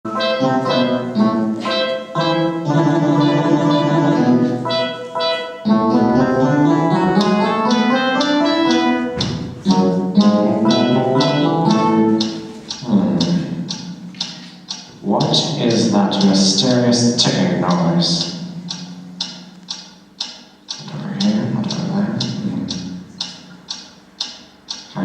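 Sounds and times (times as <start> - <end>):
plucked instrumental melody: 0.1 - 15.0.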